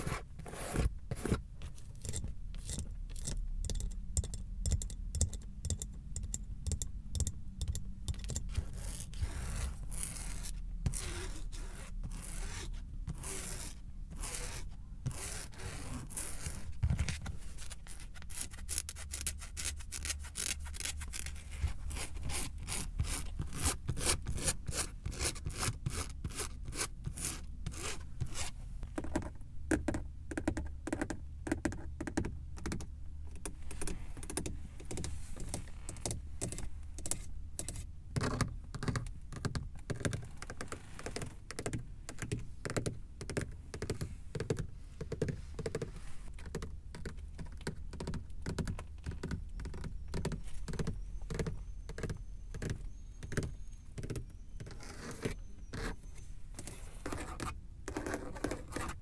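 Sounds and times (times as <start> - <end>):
fingers tapping on car surfaces: 34.2 - 54.8.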